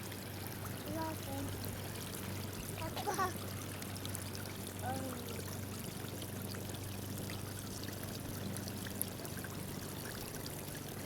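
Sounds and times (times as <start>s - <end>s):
water spraying and splashing: 0.0s - 6.5s.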